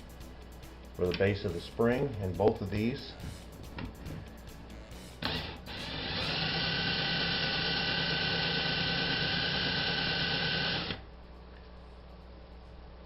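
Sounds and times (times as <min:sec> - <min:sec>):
electric drill whining: 0:05.2 - 0:11.0.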